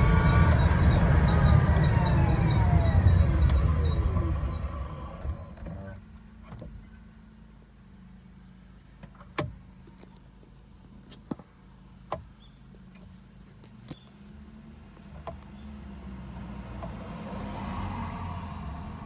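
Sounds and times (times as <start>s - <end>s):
electric trike humming: 0.0s - 5.9s.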